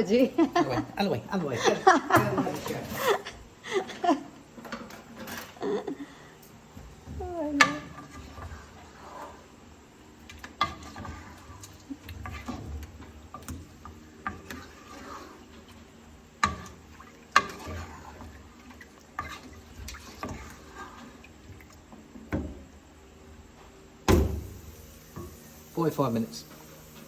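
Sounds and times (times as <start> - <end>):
utensils clinking on pots and dishes: 2.1 - 3.2.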